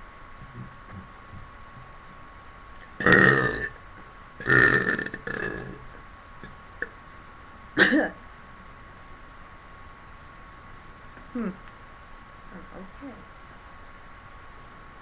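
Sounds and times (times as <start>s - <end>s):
person belching: 3.0s - 3.8s, 4.4s - 5.8s.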